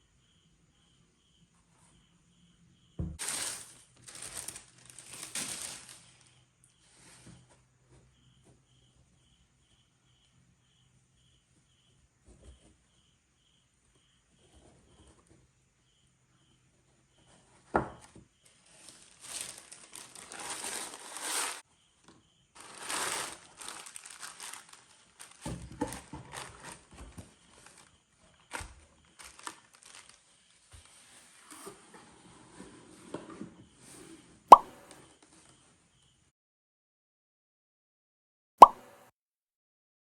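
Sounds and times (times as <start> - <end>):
packaging wrap crinkling: 3.2 - 6.3, 18.6 - 21.6, 22.6 - 31.0.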